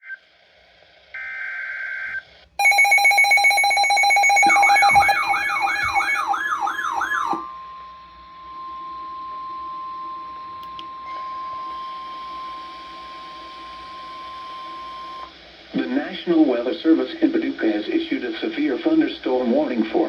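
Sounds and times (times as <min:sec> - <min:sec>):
warbling siren: 0:01.2 - 0:07.6
digital data tones: 0:02.6 - 0:07.4
rapidly pulsing alarm beep: 0:02.6 - 0:07.4
steady single-pitch alarm tone: 0:02.6 - 0:07.6.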